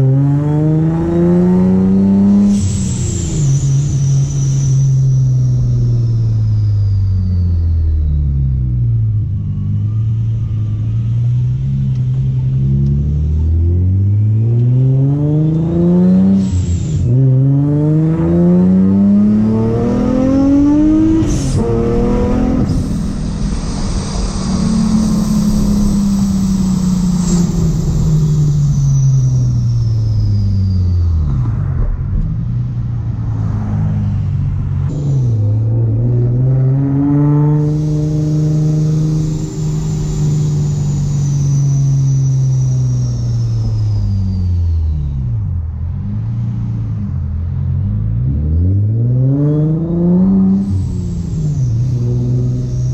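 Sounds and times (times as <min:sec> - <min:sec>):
car engine accelerating hard: 0:00.0 - 0:52.9
high supercharger whine: 0:00.0 - 0:52.9
blow-off valve hiss: 0:20.8 - 0:30.5, 0:37.5 - 0:44.3.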